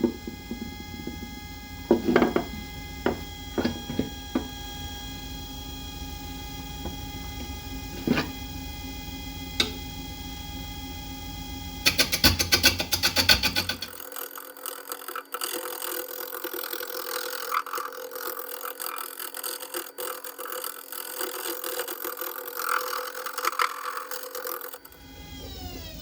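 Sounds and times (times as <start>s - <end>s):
turning tool knocking on wood: 0.0s - 4.7s, 6.8s - 8.4s, 9.6s - 9.8s, 11.9s - 14.0s
lathe motor whine: 0.0s - 26.0s.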